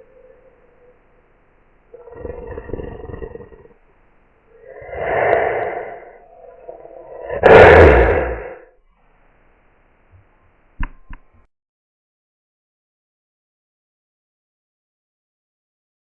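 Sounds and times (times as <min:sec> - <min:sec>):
person snarling like a wolf: 0:02.0 - 0:03.8, 0:04.6 - 0:08.7.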